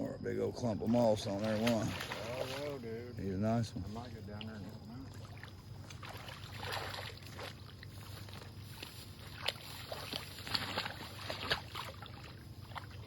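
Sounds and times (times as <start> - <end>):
low steady hum: 0.0 - 13.0
water splashing: 0.8 - 13.0.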